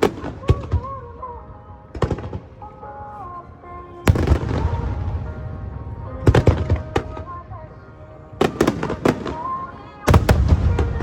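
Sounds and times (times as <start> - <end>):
music: 0.0 - 11.0
fireworks bangs: 4.1 - 5.4, 8.4 - 11.0
fireworks crackling: 4.1 - 5.5, 8.4 - 11.0.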